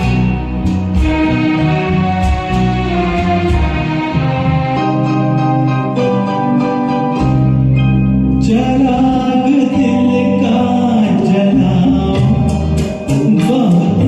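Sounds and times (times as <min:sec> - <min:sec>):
karaoke backing music: 0:00.0 - 0:14.0
man singing: 0:08.3 - 0:14.0.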